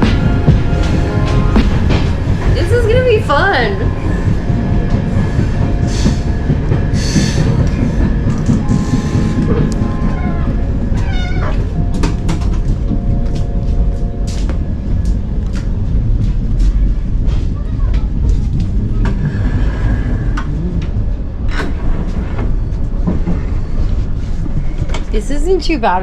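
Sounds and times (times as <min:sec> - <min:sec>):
wavering squeal: 0:00.0 - 0:15.0
faint steady tones: 0:00.0 - 0:19.0
train carriage rumble: 0:00.0 - 0:26.0.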